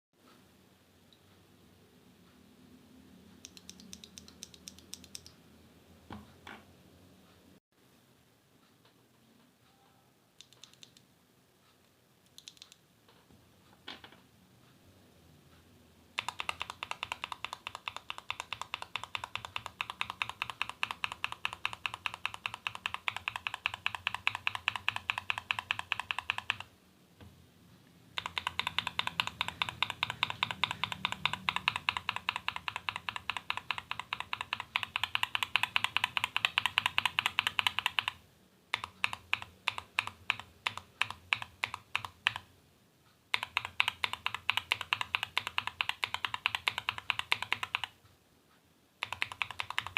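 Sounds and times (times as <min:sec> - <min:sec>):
mechanical keyboard typing: 0:03.4 - 0:05.4, 0:10.4 - 0:11.0, 0:12.3 - 0:12.8, 0:16.1 - 0:26.7, 0:28.1 - 0:42.5, 0:43.3 - 0:48.0, 0:49.0 - 0:49.9.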